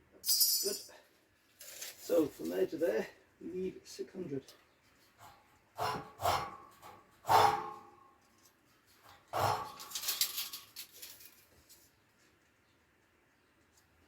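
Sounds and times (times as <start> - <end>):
metal rattle: 8.9 - 11.5.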